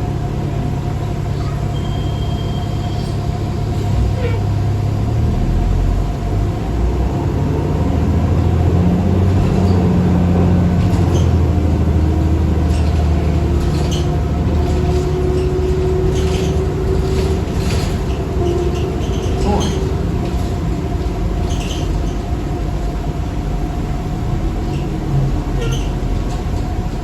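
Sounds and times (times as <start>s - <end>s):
bus diesel drone: 0.0s - 27.0s
light rattles: 12.6s - 23.0s.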